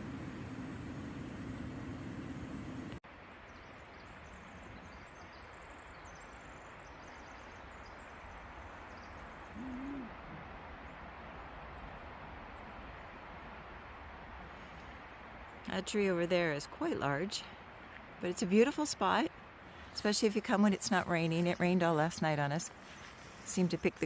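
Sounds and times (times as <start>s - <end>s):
short low hoot: 9.5s - 10.4s.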